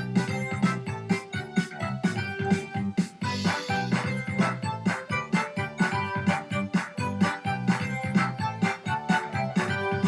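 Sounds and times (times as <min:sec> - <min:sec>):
upbeat end-credits music: 0:03.2 - 0:08.5.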